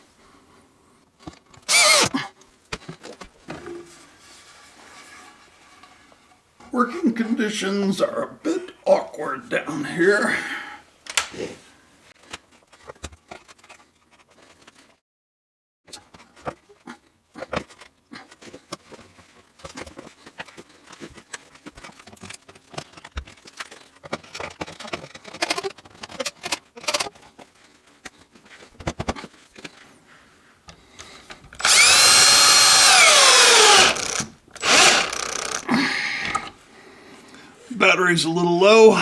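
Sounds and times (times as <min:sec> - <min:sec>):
cordless drill running: 0:01.7 - 0:02.1, 0:31.6 - 0:35.7
clicks and knocks of handling parts: 0:12.2 - 0:14.9, 0:15.9 - 0:29.8.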